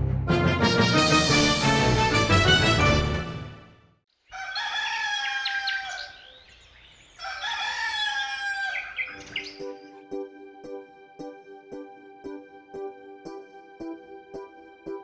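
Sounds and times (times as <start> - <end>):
rooster crowing: 4.3 - 6.5, 7.1 - 9.4.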